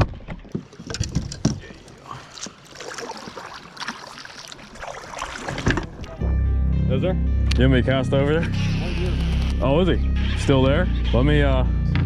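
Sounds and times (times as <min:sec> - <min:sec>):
gear knocking against kayak hull: 0:00.0 - 0:01.8
water sloshing and splashing: 0:00.0 - 0:06.4.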